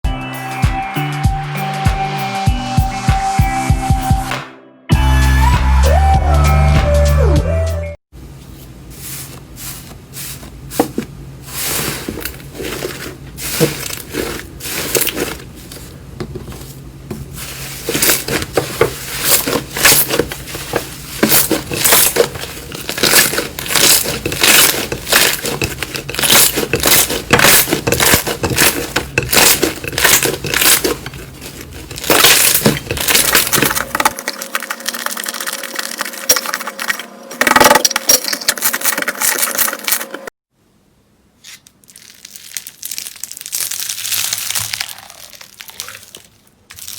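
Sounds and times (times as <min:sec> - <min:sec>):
slime crackling and popping: 0:21.1 - 0:36.8, 0:41.5 - 0:46.9.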